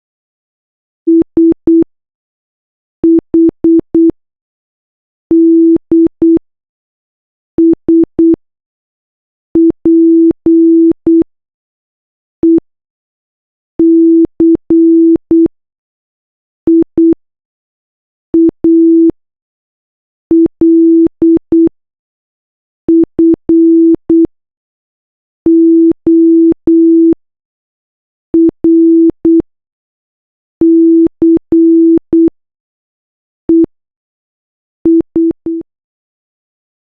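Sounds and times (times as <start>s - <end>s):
morse code beeps: 18.4s - 19.1s, 22.9s - 24.3s, 25.5s - 27.2s, 28.4s - 29.4s, 34.9s - 35.6s.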